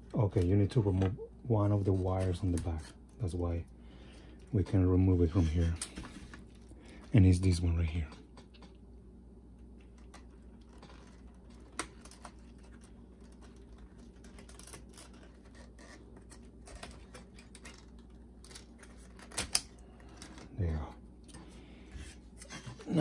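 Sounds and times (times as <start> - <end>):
faint low hum: 0.0 - 23.0
hands clicking and scratching wire: 9.8 - 20.6.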